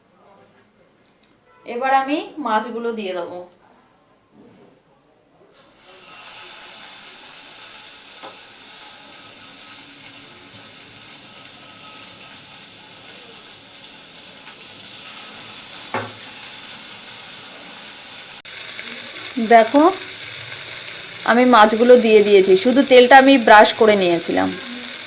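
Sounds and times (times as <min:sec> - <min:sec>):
fish sizzling in a hot pan: 0:05.6 - 0:25.0.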